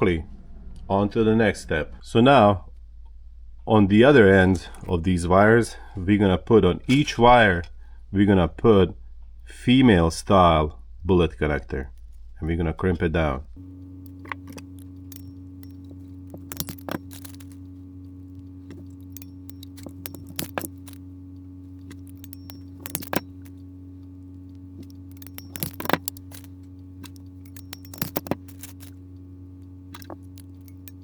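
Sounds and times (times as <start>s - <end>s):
steady low hum: 0.0s - 31.0s
metal connectors clicking: 13.6s - 31.0s.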